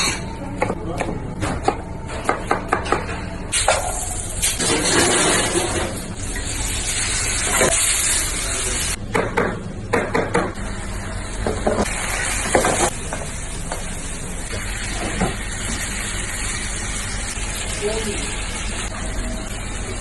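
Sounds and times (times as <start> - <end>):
food sizzling in a frying pan: 3.6 - 9.0, 10.6 - 20.0.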